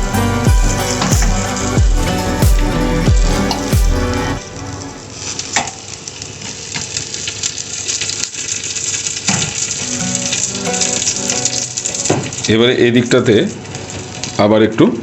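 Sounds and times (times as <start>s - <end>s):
chicken sizzling on a grill: 4.4s - 15.0s.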